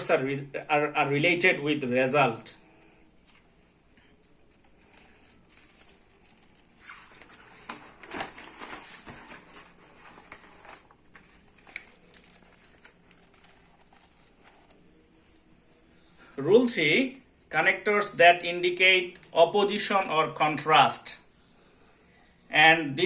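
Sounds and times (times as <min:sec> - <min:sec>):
rustling and handling noise: 0:03.0 - 0:16.3.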